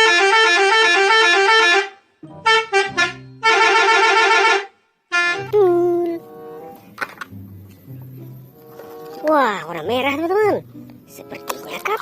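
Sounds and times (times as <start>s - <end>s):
bus horn playing a tune: 0.0s - 6.7s.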